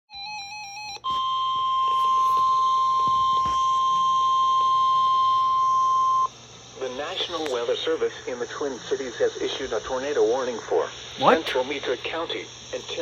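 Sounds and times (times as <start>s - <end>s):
long steady alert tone: 11.2s - 11.6s.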